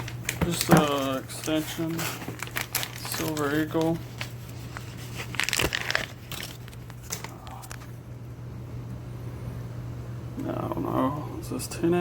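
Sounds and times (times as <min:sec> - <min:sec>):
plastic packaging crinkling: 0:00.0 - 0:07.9.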